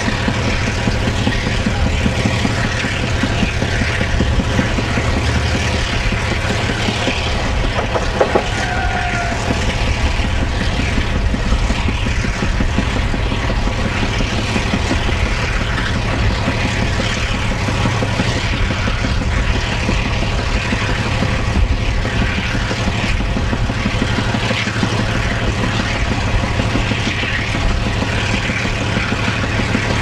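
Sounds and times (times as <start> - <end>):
diesel locomotive engine rumble: 0.0 - 30.0
train clanks: 0.0 - 30.0.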